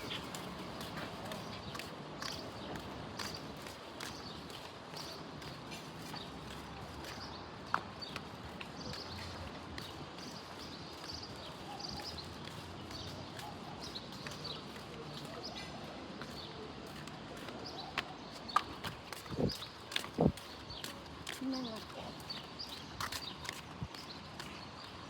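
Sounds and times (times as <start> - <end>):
footsteps walking: 0.0 - 11.6, 16.2 - 25.0.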